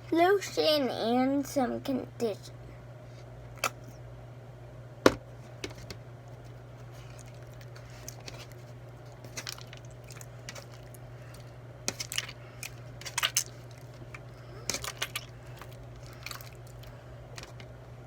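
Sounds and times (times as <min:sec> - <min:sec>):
steady low hum: 0:00.0 - 0:18.0
slime squishing: 0:06.4 - 0:17.8.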